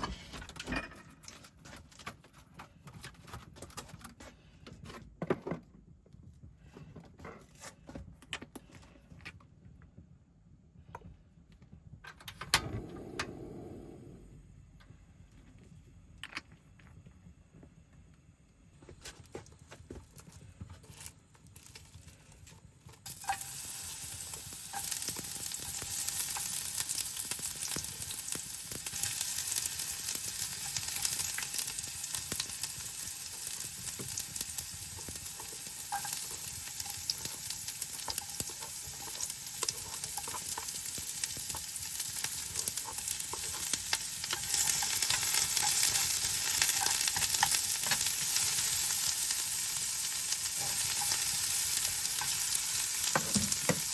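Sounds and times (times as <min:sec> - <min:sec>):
food sizzling in a pan: 0:23.1 - 0:53.9.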